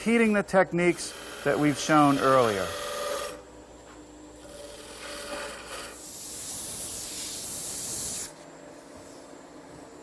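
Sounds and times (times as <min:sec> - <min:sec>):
faint steady hum: 0:00.0 - 0:10.0
lathe tool scraping wood: 0:01.0 - 0:03.4, 0:04.5 - 0:06.0.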